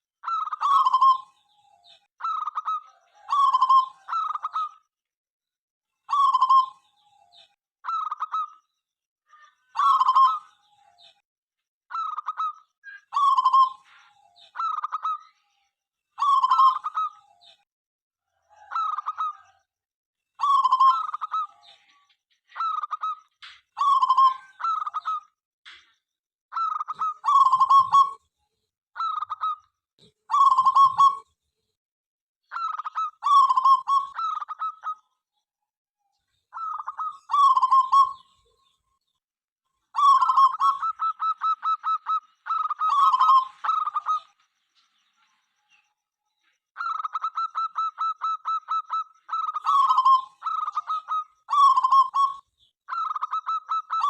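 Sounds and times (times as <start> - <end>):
dove cooing: 2.2 - 4.7, 26.6 - 28.2, 30.3 - 31.2, 32.5 - 35.0, 36.6 - 38.4, 40.0 - 44.3, 46.8 - 54.0.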